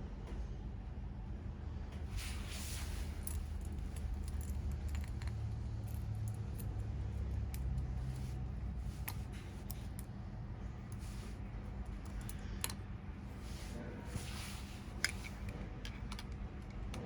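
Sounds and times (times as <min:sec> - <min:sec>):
steady low hum: 0:00.0 - 0:17.0
metal parts and tools clinking: 0:02.1 - 0:10.1, 0:10.9 - 0:12.8, 0:13.4 - 0:16.4.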